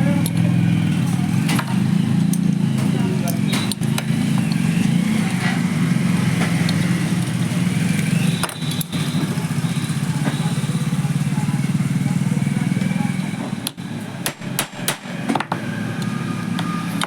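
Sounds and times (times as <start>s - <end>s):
low mechanical drone: 0.0s - 17.0s
sharp clicks: 2.2s - 4.7s.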